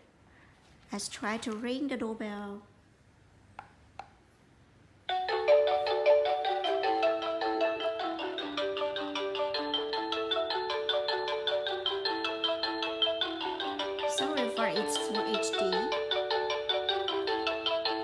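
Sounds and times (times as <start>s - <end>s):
electronic ringtone melody: 5.1s - 18.0s.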